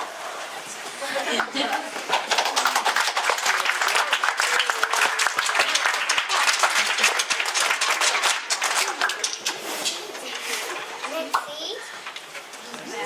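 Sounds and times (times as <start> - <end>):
audience applauding: 1.3 - 9.8.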